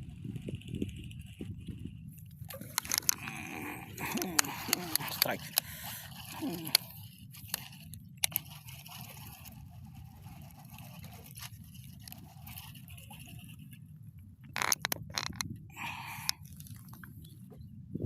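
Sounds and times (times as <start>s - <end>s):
fishing reel scraping rasp: 2.2s - 13.8s, 14.6s - 17.0s.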